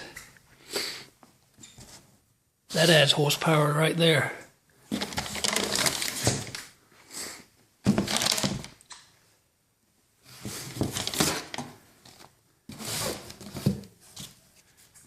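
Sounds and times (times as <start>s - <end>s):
packaging rustling and crinkling: 4.9s - 6.7s, 7.9s - 8.8s, 10.5s - 14.4s.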